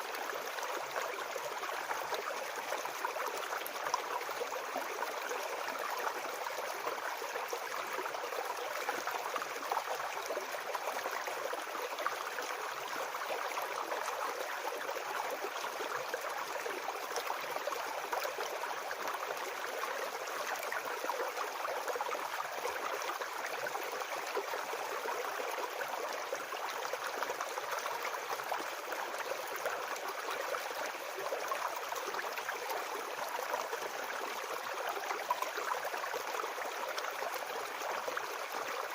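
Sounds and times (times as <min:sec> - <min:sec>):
brook babbling over stones: 0:00.0 - 0:38.9.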